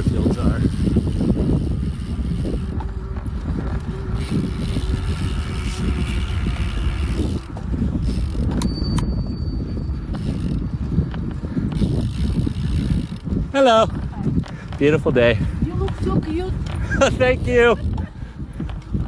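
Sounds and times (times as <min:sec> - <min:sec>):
steady low rumble: 0:00.0 - 0:19.0
bicycle bell ding: 0:08.6 - 0:10.0.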